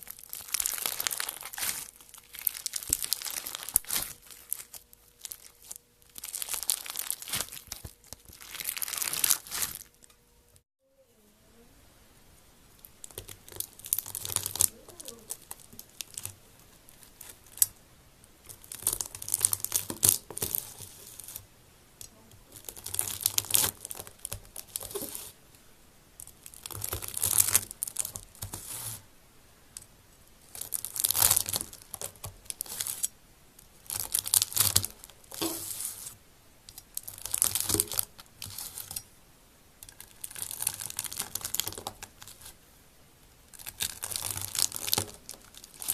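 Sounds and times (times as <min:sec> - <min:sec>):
slime squeezed by hand crackling: 0:00.0 - 0:10.0.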